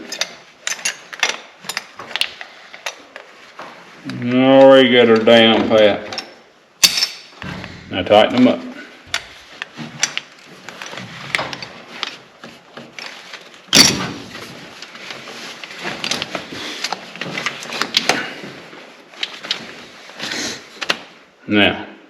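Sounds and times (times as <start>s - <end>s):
metal buckle clicks and rattles: 0.0s - 3.2s.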